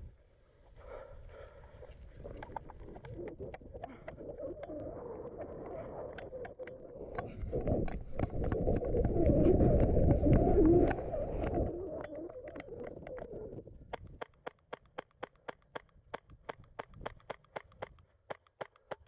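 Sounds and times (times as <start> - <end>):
sharp ticks and crackles: 1.4 - 19.0
dove cooing: 2.4 - 13.6.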